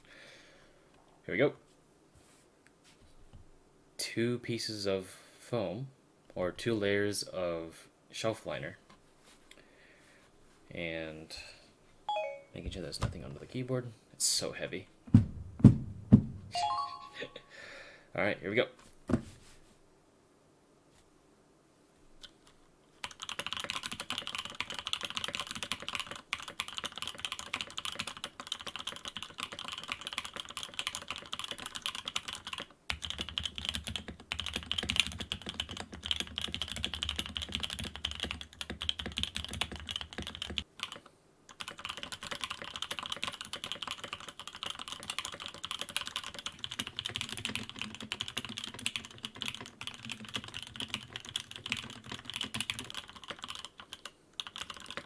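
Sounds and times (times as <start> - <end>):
fast typing on mechanical keyboard: 23.0 - 55.0.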